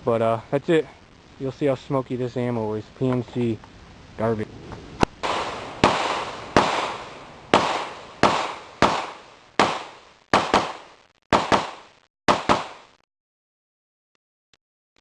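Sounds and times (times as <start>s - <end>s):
pistol shots with echo: 5.2s - 12.9s.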